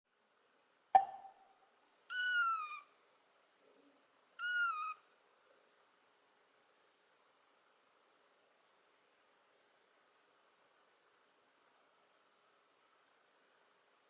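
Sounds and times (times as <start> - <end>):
sharp click: 1.0 - 1.4.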